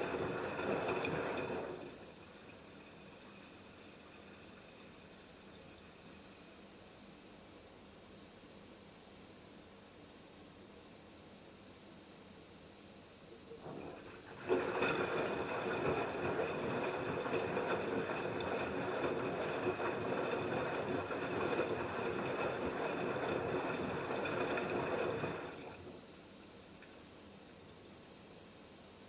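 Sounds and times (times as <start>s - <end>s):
washing machine drum turning: 0.0s - 2.0s, 13.6s - 25.9s.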